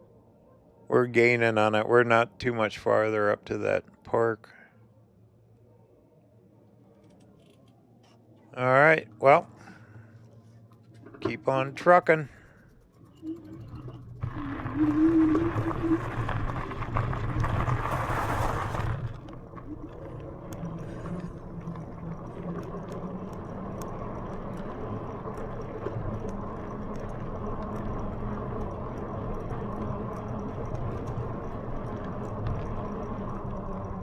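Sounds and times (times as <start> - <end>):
e-bike motor hum: 13.1 - 34.0
faint ticks: 19.2 - 34.0.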